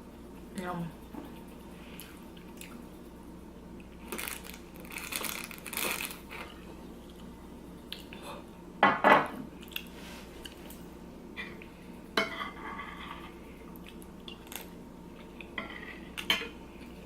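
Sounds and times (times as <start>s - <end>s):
cutlery scraping on a plate: 12.2s - 13.3s, 15.6s - 16.6s.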